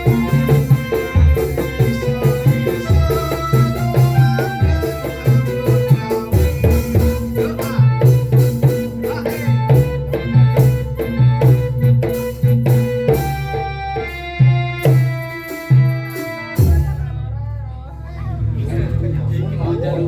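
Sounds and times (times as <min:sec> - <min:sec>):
hand drum beat: 0:00.0 - 0:13.6
folk melodic instruments: 0:00.0 - 0:17.2.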